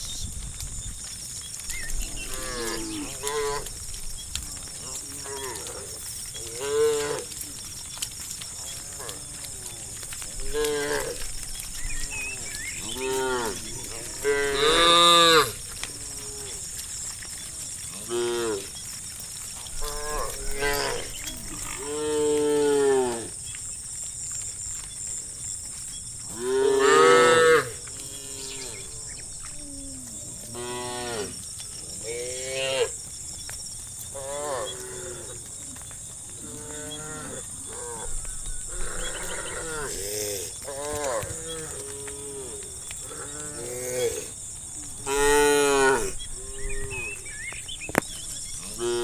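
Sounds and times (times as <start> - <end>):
cattle mooing: 12.2 - 16.6.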